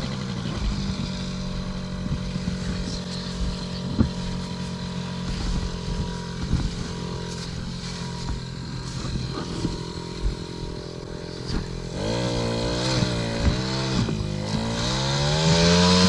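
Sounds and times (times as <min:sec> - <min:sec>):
knocks over bumps: 0:00.0 - 0:16.0
two-stroke engine running: 0:00.0 - 0:16.0.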